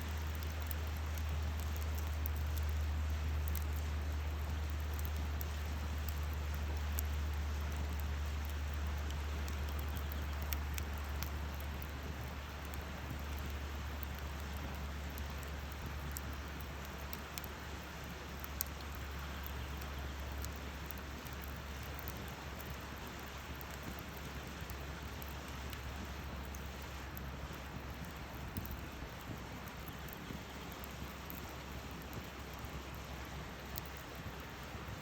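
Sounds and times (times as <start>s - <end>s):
campfire hissing and crackling: 0.0s - 35.0s.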